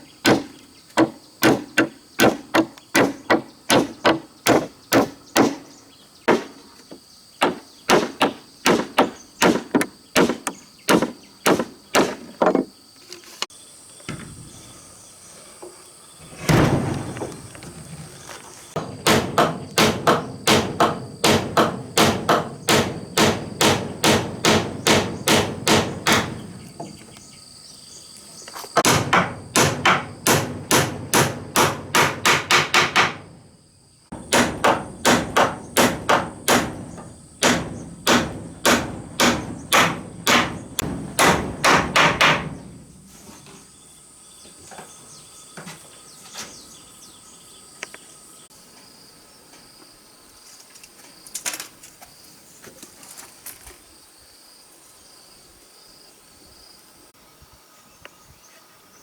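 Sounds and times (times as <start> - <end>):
insects chirping: 0.0 - 59.0
hammer striking wood: 0.3 - 5.6, 6.3 - 6.6, 7.4 - 12.7, 18.8 - 27.0, 28.8 - 33.4, 34.1 - 42.8.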